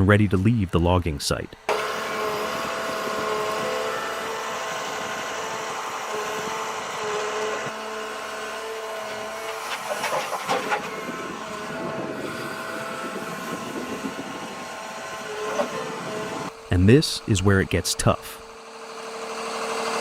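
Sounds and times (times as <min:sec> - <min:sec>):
engine and hydraulic whine: 0:00.0 - 0:20.0
metal clanking and rattling: 0:09.5 - 0:11.0.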